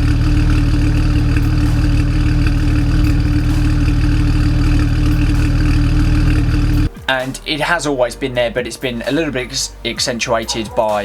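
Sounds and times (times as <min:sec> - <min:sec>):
car engine idling with misfire: 0:00.0 - 0:07.0.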